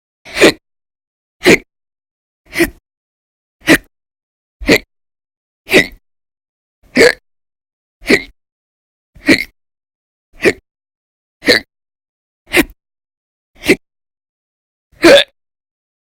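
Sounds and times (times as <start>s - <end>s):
person hiccuping: 4.6s - 4.9s, 5.7s - 6.0s, 6.9s - 7.2s, 8.0s - 8.3s, 9.2s - 9.5s, 10.4s - 10.6s, 11.4s - 11.7s, 15.0s - 15.4s.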